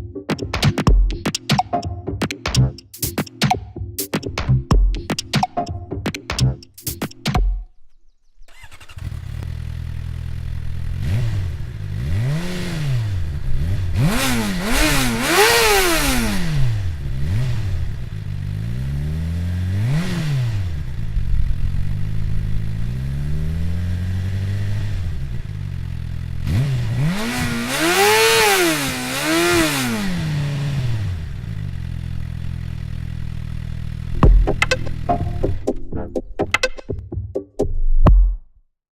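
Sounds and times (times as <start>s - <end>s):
motorcycle engine revving: 8.5s - 35.6s.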